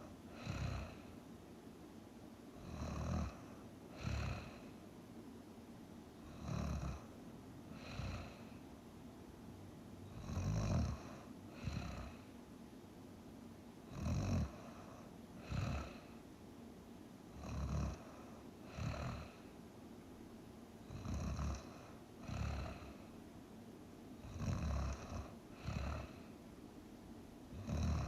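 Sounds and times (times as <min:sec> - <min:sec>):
person snoring: 0:00.3 - 0:01.2, 0:02.6 - 0:04.7, 0:06.3 - 0:07.1, 0:07.7 - 0:08.6, 0:10.1 - 0:12.3, 0:13.9 - 0:16.2, 0:17.4 - 0:19.4, 0:20.9 - 0:23.1, 0:24.2 - 0:26.3, 0:27.5 - 0:28.0.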